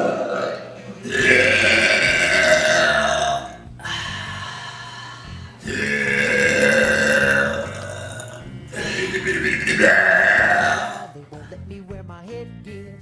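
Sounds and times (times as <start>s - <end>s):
woman burping: 0.0s - 4.2s, 5.6s - 11.2s.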